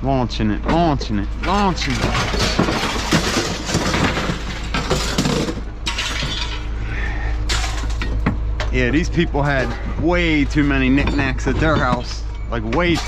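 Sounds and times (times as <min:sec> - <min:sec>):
glass and ceramics breaking: 0:01.4 - 0:06.8, 0:07.4 - 0:08.4, 0:09.6 - 0:13.0
junk crashing onto a pile: 0:01.4 - 0:06.8, 0:07.4 - 0:08.7.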